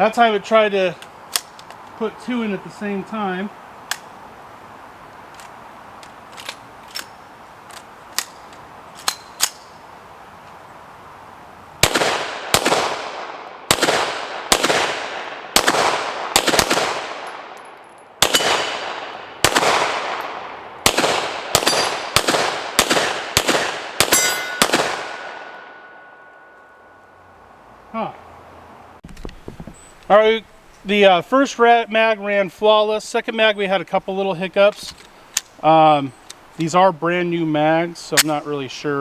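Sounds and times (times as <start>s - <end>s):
pistol shots echoing: 11.8s - 17.6s, 18.2s - 26.0s.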